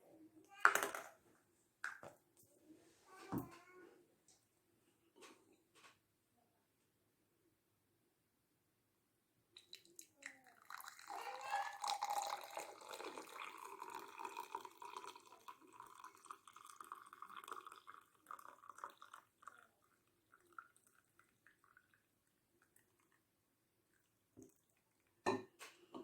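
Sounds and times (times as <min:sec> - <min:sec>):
liquid pouring: 0:09.6 - 0:25.2
liquid dripping: 0:09.6 - 0:25.3.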